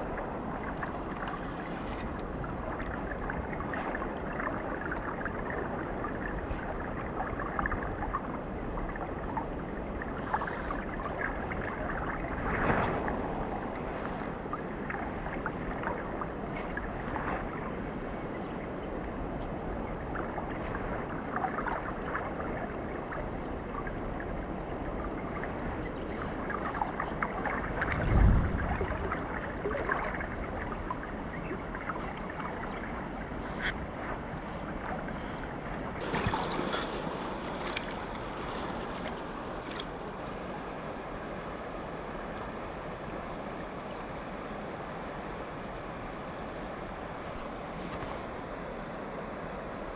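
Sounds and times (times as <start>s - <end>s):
water splashes and gurgles: 0.0s - 49.9s
stream water rushing: 27.8s - 29.7s.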